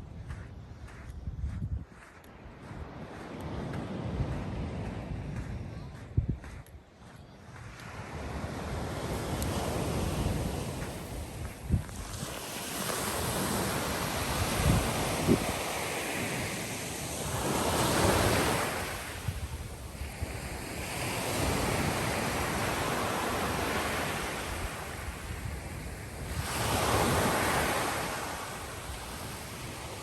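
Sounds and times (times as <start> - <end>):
wind buffeting microphone: 0.0 - 16.4, 17.1 - 28.2
sea waves breaking on shore: 7.9 - 30.0.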